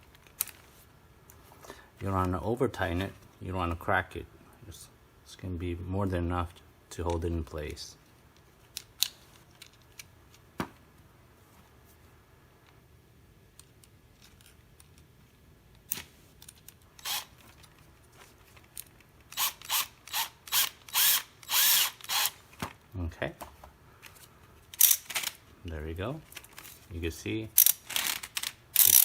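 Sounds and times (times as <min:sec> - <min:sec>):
ratchet mechanism ratcheting: 0:17.0 - 0:17.4, 0:19.3 - 0:22.4, 0:24.8 - 0:25.4, 0:27.6 - 0:29.0.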